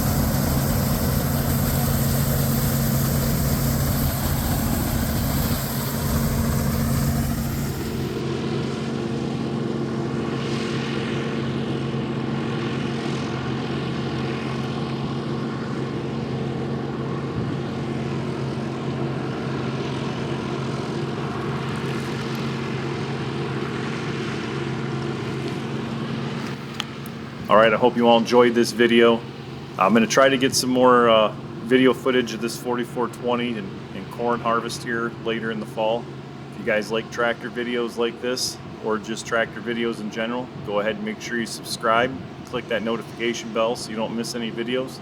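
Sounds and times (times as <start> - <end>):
threshing noise: 0.0 - 8.2
diesel engine droning: 0.0 - 45.0.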